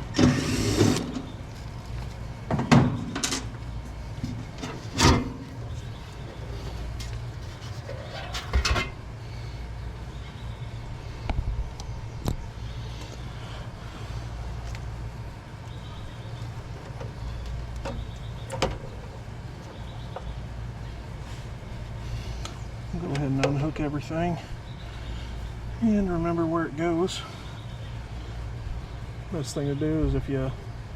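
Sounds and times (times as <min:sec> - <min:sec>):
low hum: 0:00.0 - 0:29.4
tools clicking and clunking: 0:02.5 - 0:03.6.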